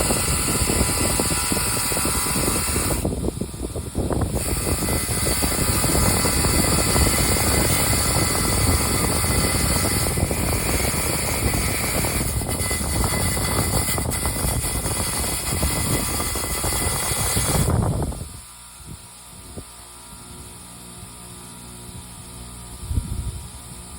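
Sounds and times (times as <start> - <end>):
power tool grinding: 0.0 - 18.4.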